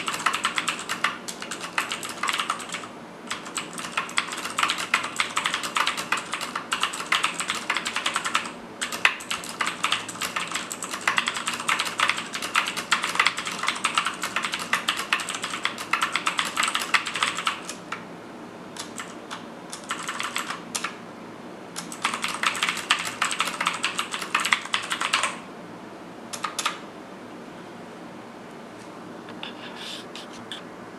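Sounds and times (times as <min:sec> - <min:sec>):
mechanical keyboard typing: 0:00.0 - 0:18.0, 0:18.8 - 0:21.0, 0:21.8 - 0:25.4, 0:26.3 - 0:26.8.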